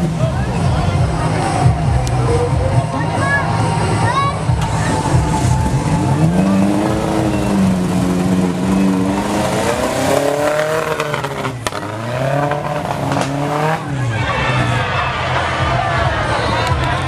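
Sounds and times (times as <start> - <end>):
jeep engine revving hard: 4.5 - 15.2.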